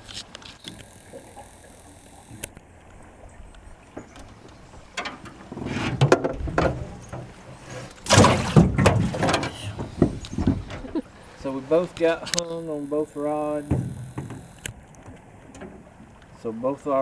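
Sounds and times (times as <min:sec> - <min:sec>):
fishing gear knocking and rattling: 0:03.9 - 0:12.5, 0:13.6 - 0:16.3.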